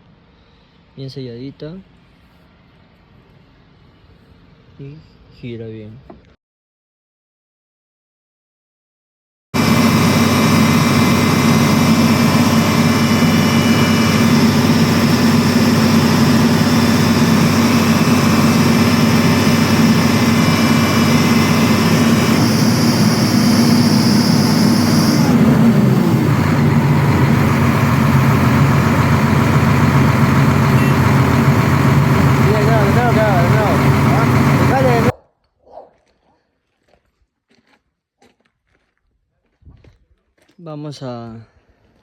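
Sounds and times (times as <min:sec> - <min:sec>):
excavator diesel engine running: 0:09.6 - 0:35.1.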